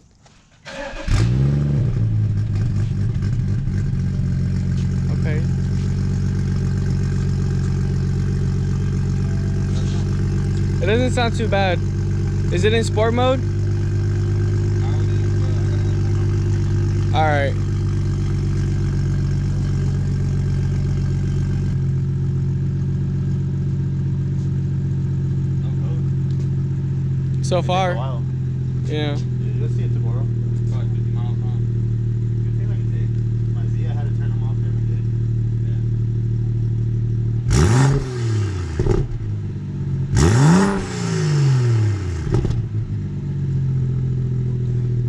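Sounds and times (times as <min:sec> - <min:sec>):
engine revving: 0:00.7 - 0:35.9, 0:37.4 - 0:43.0
car engine idling: 0:00.7 - 0:45.0.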